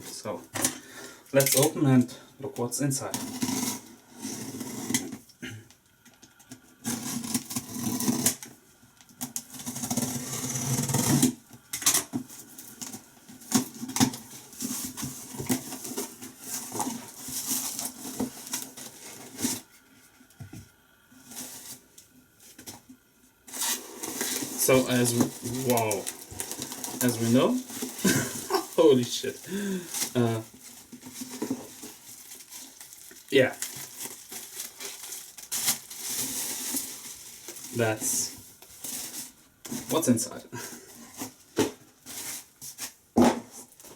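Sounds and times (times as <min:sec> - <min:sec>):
cardboard rustling and scraping: 0:06.8 - 0:08.5, 0:09.4 - 0:11.4, 0:12.1 - 0:43.9
packing tape tearing: 0:06.8 - 0:08.5, 0:09.2 - 0:19.6, 0:23.5 - 0:37.9.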